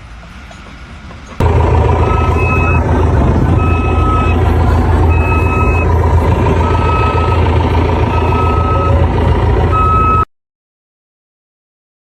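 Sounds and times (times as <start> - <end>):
heavy vehicle engine rumbling: 0.0 - 10.3
reversing alarm beeping: 1.8 - 10.3.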